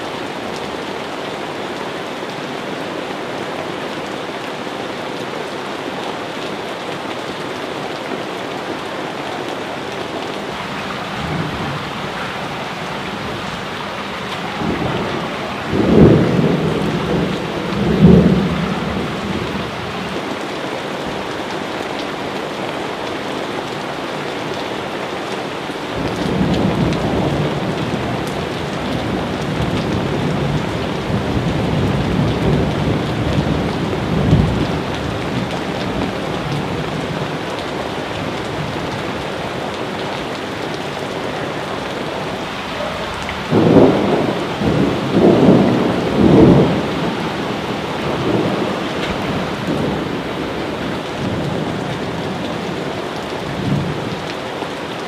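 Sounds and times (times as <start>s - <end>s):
heavy rain: 0.0s - 55.0s
rolling thunder: 10.6s - 20.2s, 41.4s - 52.1s.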